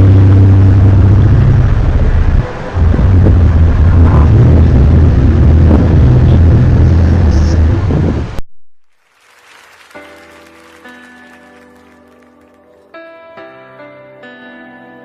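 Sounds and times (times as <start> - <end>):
distorted low rumbling drone: 0.0 - 8.4
soft music with held notes: 10.0 - 15.0.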